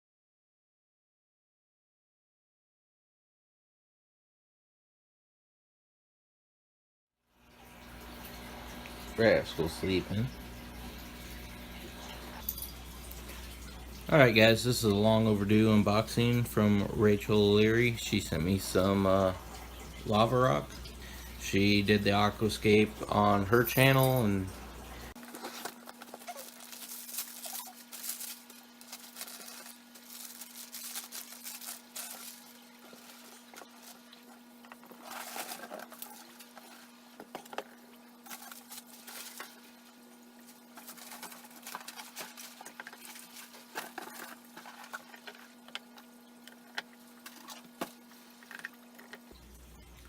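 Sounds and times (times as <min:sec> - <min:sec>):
steady low hum: 0:07.5 - 0:25.9
packaging rustling and crackling: 0:25.1 - 0:49.3.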